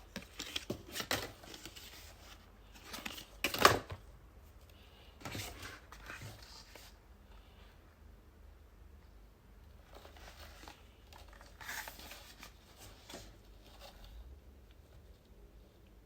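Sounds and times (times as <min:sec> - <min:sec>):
packaging rustling and crinkling: 0:09.8 - 0:14.2.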